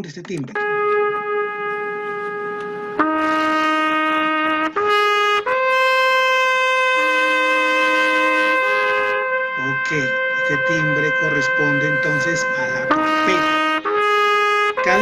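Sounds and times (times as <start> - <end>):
trumpet playing sustained notes: 0.6 - 15.0.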